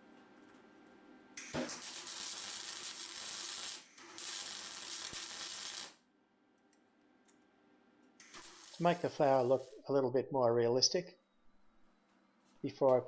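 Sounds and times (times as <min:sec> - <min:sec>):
arc welder hissing: 0:01.4 - 0:06.0, 0:08.2 - 0:09.9.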